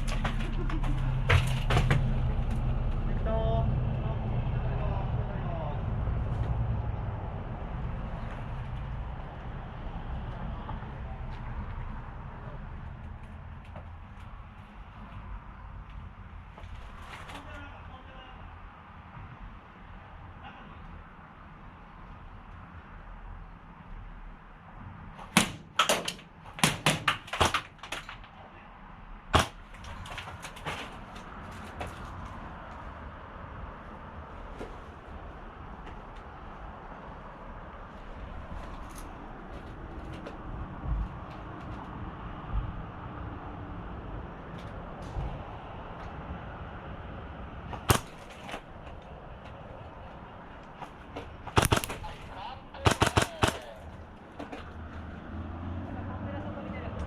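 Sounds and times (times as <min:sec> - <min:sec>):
airsoft gun shots: 0:25.3 - 0:27.7, 0:47.8 - 0:48.3, 0:51.5 - 0:52.2, 0:52.8 - 0:53.8
airsoft gun cracks: 0:47.9 - 0:48.3, 0:51.6 - 0:52.1, 0:52.8 - 0:53.7.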